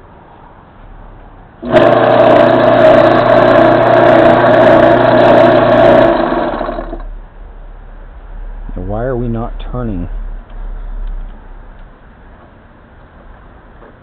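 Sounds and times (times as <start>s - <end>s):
electric motor humming: 1.6s - 7.1s
motor winding down: 1.6s - 7.1s.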